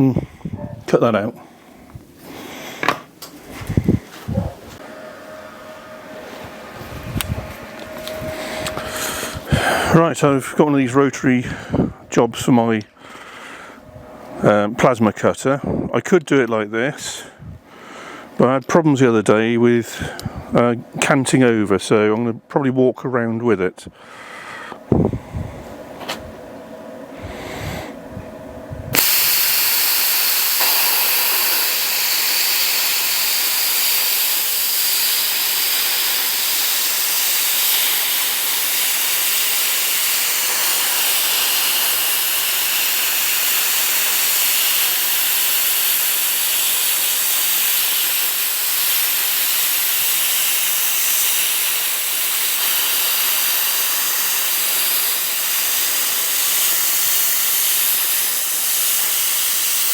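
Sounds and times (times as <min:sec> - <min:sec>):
plasma cutter hissing: 0:29.0 - 0:59.9.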